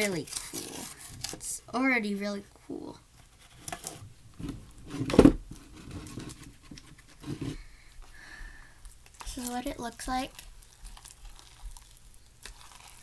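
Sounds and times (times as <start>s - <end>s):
slime squelching in a bowl: 8.9s - 13.0s.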